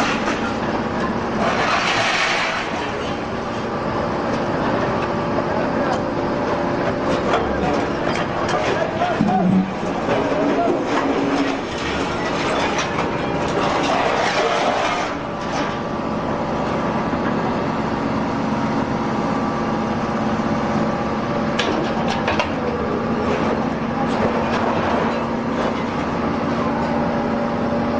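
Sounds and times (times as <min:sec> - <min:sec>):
hydraulic unit hum: 0:00.0 - 0:27.9
scrap metal clanking: 0:08.5 - 0:15.7.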